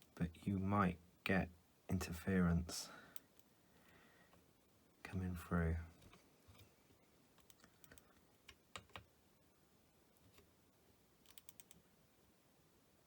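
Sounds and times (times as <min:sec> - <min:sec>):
small parts and tools clicking: 0:11.2 - 0:11.8.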